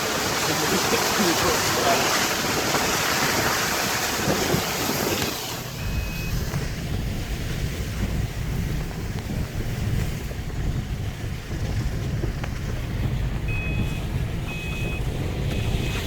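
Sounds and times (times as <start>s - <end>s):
car rumbling on dirt road: 0.0s - 16.0s
electronic car warning beep: 5.8s - 6.5s, 13.5s - 16.0s.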